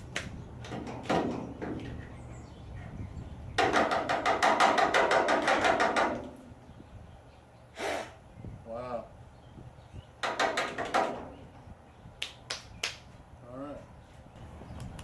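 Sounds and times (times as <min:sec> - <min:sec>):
rapid even knocks: 0:03.6 - 0:06.4, 0:10.2 - 0:11.3.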